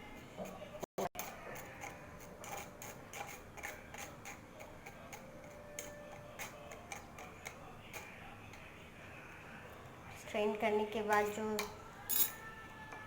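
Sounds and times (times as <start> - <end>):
kitchen utensils clicking: 0.1 - 8.1.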